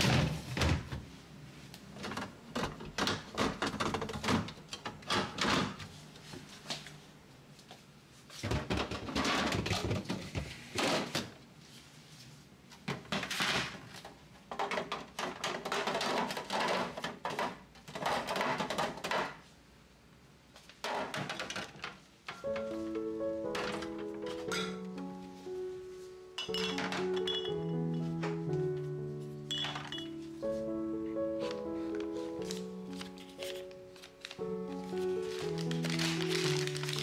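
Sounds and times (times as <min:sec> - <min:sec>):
plastic containers clattering: 0:08.4 - 0:11.3, 0:12.9 - 0:19.4.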